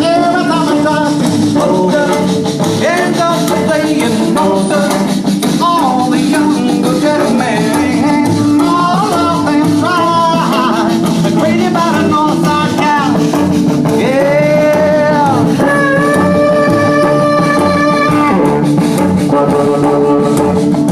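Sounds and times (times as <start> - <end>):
band playing: 0.0 - 20.9
person singing: 0.0 - 20.9.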